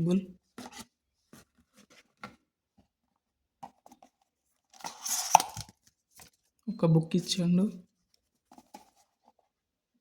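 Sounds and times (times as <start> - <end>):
cardboard and paper rustling: 0.4 - 3.0, 8.1 - 9.6.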